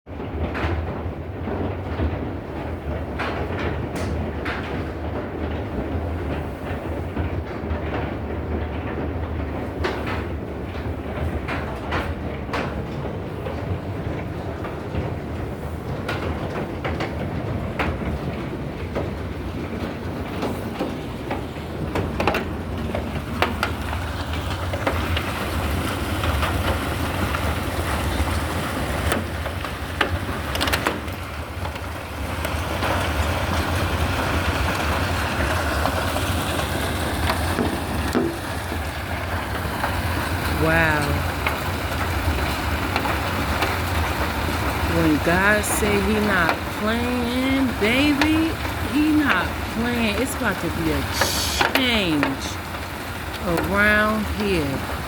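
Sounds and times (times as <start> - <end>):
hailstones pelting: 0.2 - 55.0.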